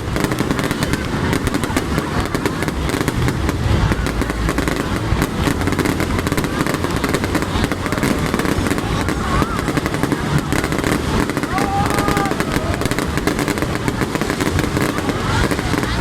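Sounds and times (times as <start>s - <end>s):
fireworks bangs and crackles: 0.0s - 16.0s
low rumble: 0.0s - 16.0s.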